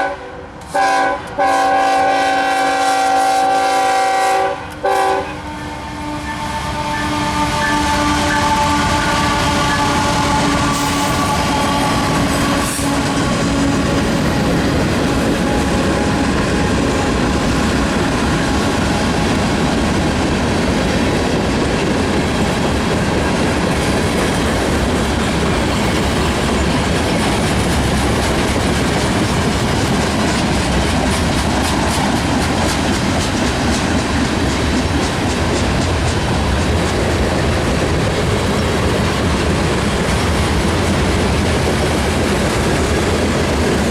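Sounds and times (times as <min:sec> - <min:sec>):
train horn: 0:00.0 - 0:19.7
freight train rumbling past: 0:00.0 - 0:43.9
wheels clacking over rail joints: 0:08.1 - 0:43.9.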